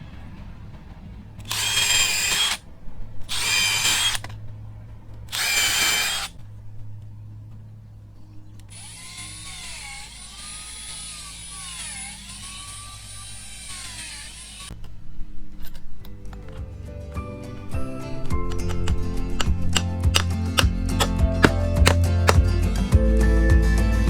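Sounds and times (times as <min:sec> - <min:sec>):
power drill whining: 0:01.4 - 0:02.6, 0:03.2 - 0:04.5, 0:05.2 - 0:06.4, 0:08.6 - 0:16.7, 0:17.5 - 0:22.5.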